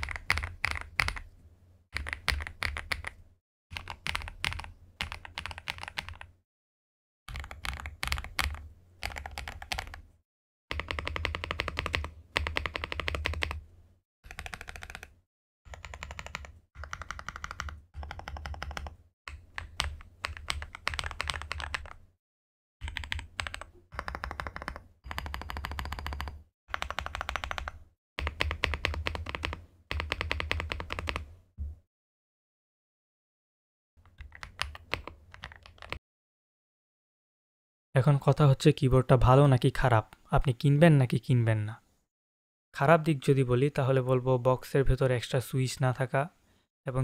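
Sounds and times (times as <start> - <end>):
mechanical keyboard typing: 0.0 - 1.3, 2.0 - 3.2, 3.8 - 6.3, 7.3 - 10.0, 10.7 - 13.6, 14.3 - 15.1, 15.7 - 22.0, 22.8 - 31.3, 34.1 - 36.0.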